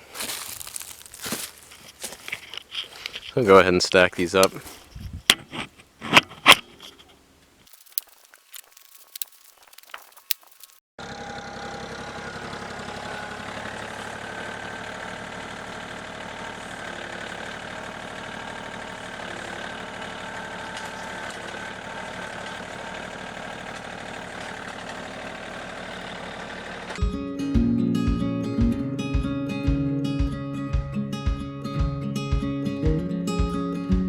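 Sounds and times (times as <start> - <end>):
engine running steadily: 11.0 - 27.2.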